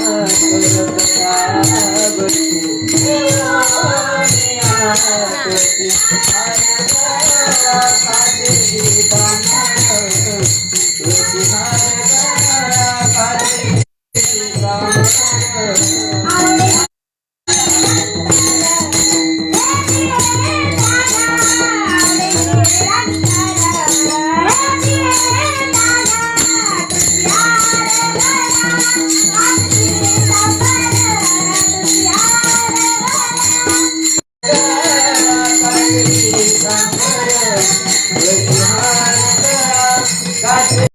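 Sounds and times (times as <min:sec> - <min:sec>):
woman singing: 0:00.0 - 0:10.4, 0:17.6 - 0:40.9
drum beating steady rhythm: 0:00.0 - 0:40.9
hand cymbals clashing: 0:17.5 - 0:40.9.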